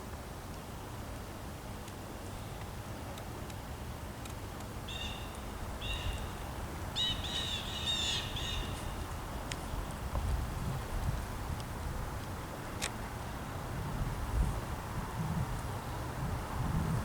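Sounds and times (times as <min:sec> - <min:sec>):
bird calling: 0:04.9 - 0:09.1.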